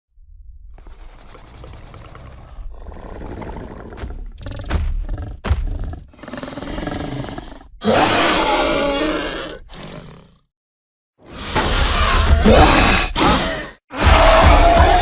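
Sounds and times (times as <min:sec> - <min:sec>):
creature growling: 0:00.8 - 0:10.5
loud creature roar: 0:01.7 - 0:10.4, 0:11.3 - 0:15.0.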